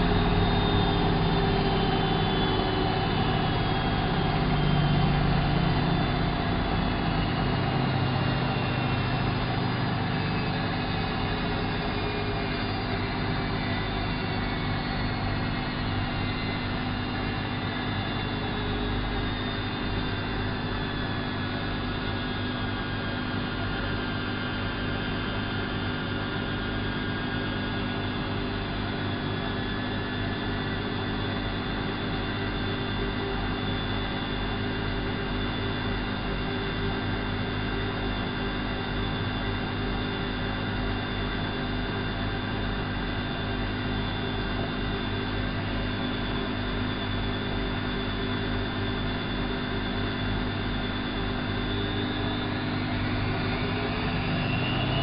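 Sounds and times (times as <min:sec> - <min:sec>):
washing machine motor whining: 0:00.0 - 0:21.9, 0:38.7 - 0:55.0.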